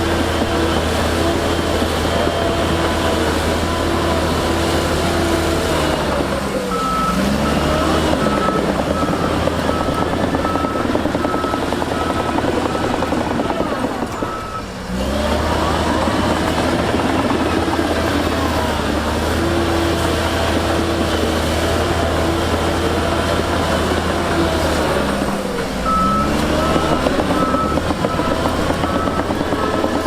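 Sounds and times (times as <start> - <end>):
heavy diesel machinery running: 0.0 - 30.0
reversing alarm beeping: 6.7 - 14.7, 25.8 - 30.0.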